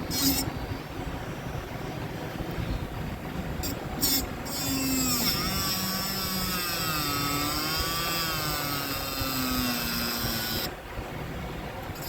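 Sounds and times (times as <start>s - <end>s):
high-speed motor tool whining: 3.6s - 10.8s.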